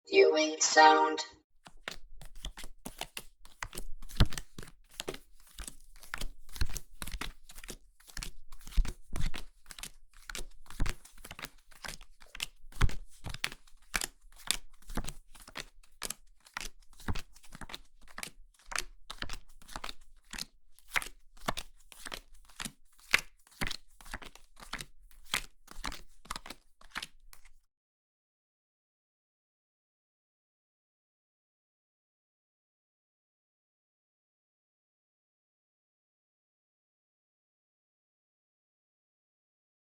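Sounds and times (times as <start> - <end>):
playing cards being dealt: 1.9 - 7.4, 20.9 - 27.5.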